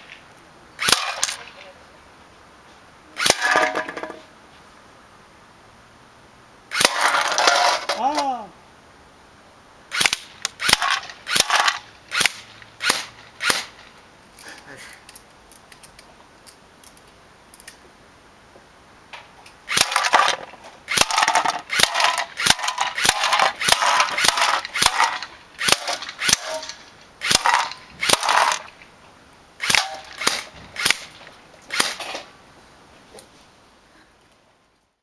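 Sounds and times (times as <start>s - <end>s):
airsoft gun firing bursts: 0.8s - 1.4s, 6.7s - 7.4s, 9.9s - 13.8s, 19.7s - 28.7s, 29.6s - 32.2s.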